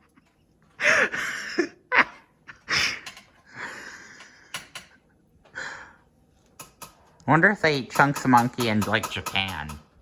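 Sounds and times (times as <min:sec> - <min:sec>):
person wheezing laughter: 0:00.0 - 0:04.2.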